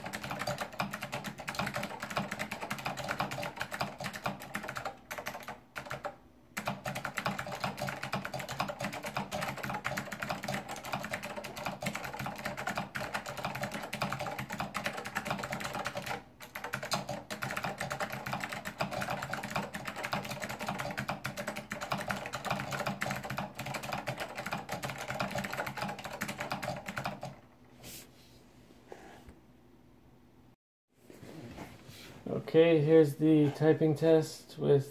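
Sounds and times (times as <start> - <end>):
clicky keyboard typing: 0.0 - 27.4.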